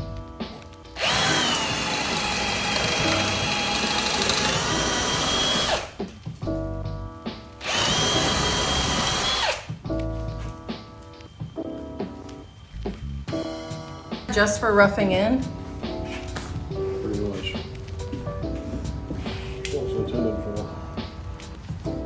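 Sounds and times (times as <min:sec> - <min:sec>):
power drill boring through wood: 0:01.0 - 0:06.0, 0:07.6 - 0:09.8.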